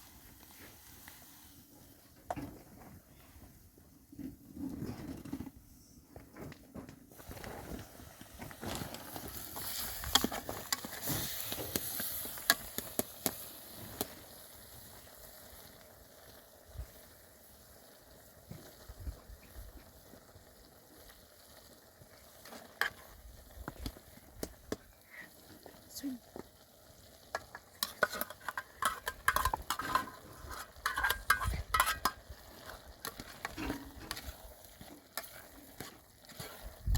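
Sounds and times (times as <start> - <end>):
food sizzling in a pan: 7.2 - 36.9
utensil clicking against pan: 27.3 - 32.2.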